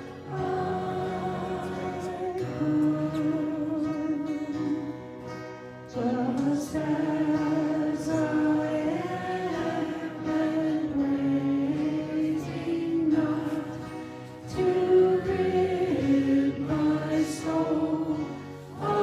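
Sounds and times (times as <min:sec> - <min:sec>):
group singing a slow hymn: 0:00.0 - 0:19.0.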